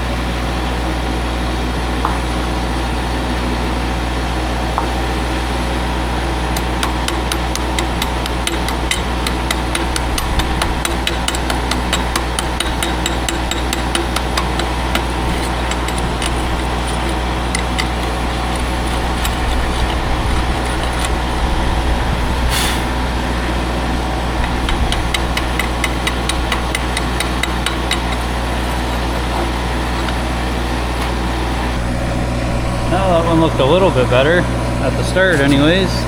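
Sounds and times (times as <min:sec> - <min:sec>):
engine running: 0:06.4 - 0:22.4
sharp ticks and taps: 0:06.6 - 0:19.9, 0:24.4 - 0:28.3
brief hiss: 0:22.5 - 0:22.9.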